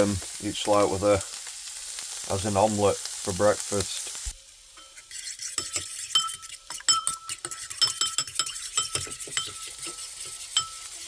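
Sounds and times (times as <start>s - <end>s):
metal utensil beating eggs in bowl: 5.0s - 11.0s.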